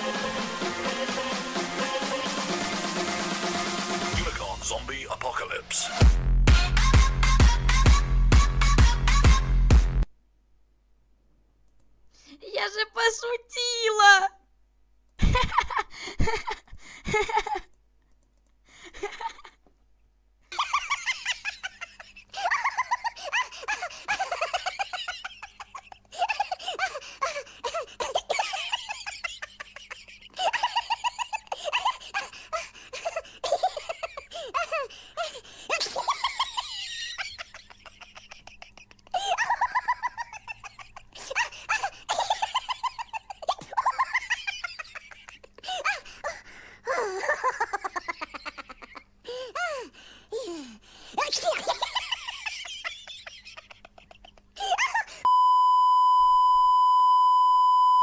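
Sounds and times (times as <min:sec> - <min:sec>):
high-pitched laughter: 0:20.5 - 0:32.3, 0:35.7 - 0:46.1, 0:46.9 - 0:49.1, 0:51.2 - 0:55.2.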